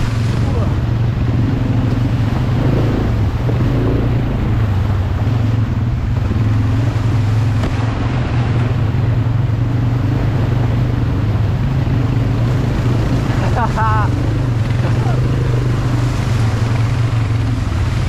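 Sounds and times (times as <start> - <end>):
quad bike engine running: 0.0 - 18.0.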